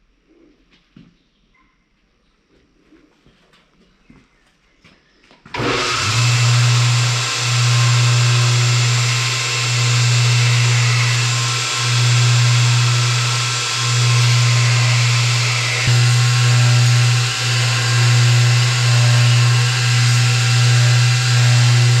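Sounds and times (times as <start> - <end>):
electric power tool humming: 5.5 - 22.0.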